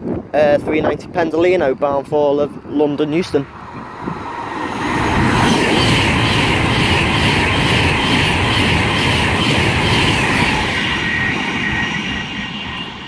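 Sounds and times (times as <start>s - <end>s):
electric train passing close: 3.3s - 13.0s.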